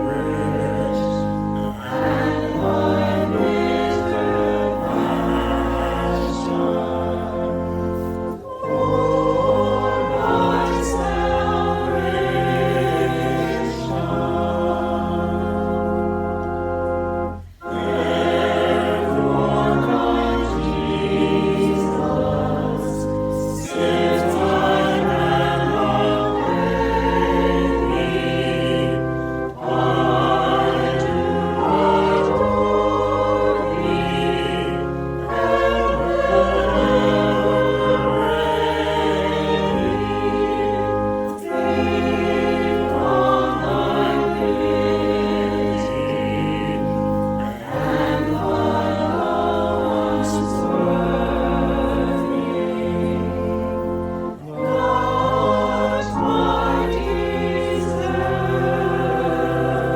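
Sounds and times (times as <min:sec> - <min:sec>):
choir singing a hymn: 0:00.0 - 0:59.9
organ: 0:00.0 - 0:59.9.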